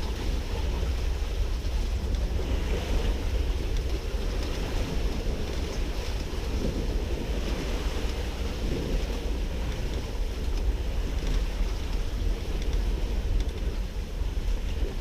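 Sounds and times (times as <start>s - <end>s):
water washing around a boat: 0.0s - 15.0s
wind buffeting microphone: 0.0s - 15.0s.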